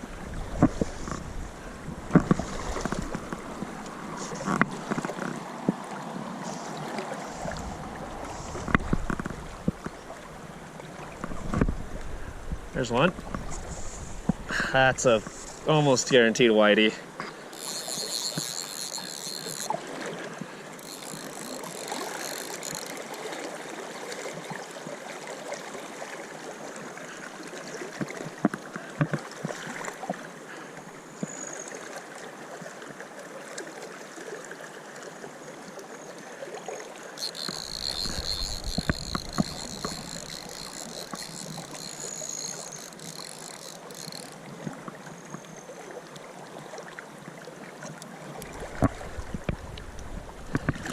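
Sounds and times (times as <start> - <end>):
high buzzing: 17.5 - 19.8, 20.8 - 23.0, 37.2 - 44.4.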